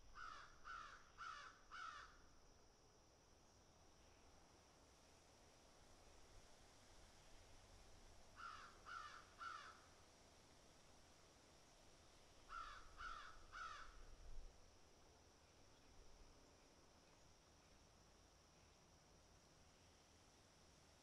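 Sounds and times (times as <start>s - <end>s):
crow cawing faintly: 0.2s - 2.2s, 8.4s - 9.9s, 12.5s - 14.1s.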